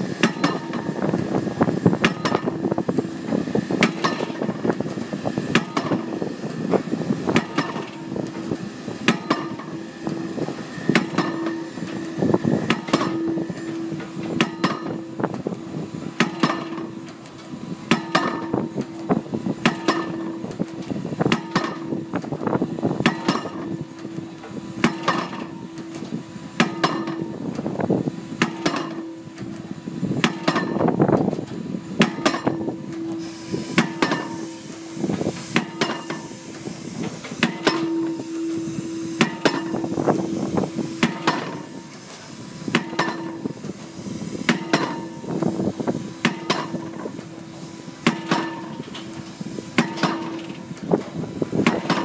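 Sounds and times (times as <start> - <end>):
pile driver hammer striking: 0.2 - 1.0, 2.0 - 2.6, 3.8 - 4.5, 5.5 - 6.1, 7.3 - 8.0, 9.0 - 10.2, 10.9 - 15.1, 16.2 - 16.9, 17.9 - 21.9, 23.0 - 23.8, 24.8 - 25.8, 26.6 - 27.3, 28.4 - 29.1, 30.2 - 30.9, 32.0 - 34.5, 35.6 - 36.4, 37.3 - 38.5, 39.2 - 39.9, 40.6 - 41.8, 42.7 - 43.5, 44.5 - 45.2, 46.2 - 47.0, 48.0 - 49.0, 49.8 - 50.6, 51.6 - 52.0.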